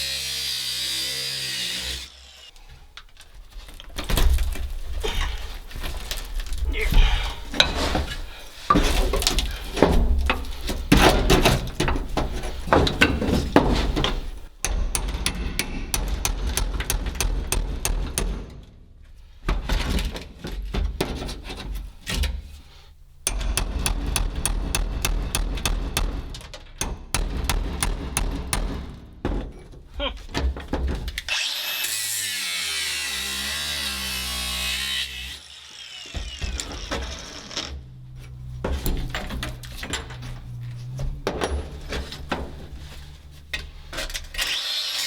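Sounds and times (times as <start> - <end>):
metal tools clanking: 2.7 - 18.8, 20.5 - 31.3, 37.7 - 44.5.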